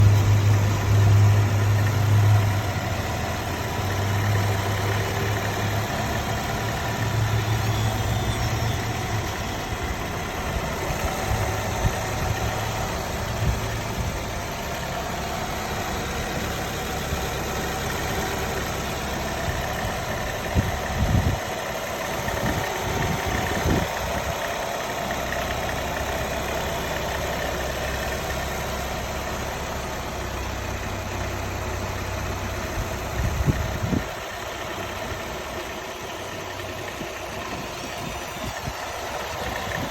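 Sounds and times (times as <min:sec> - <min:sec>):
car engine idling with rattle: 0:00.0 - 0:39.9
engine whine: 0:00.0 - 0:39.9.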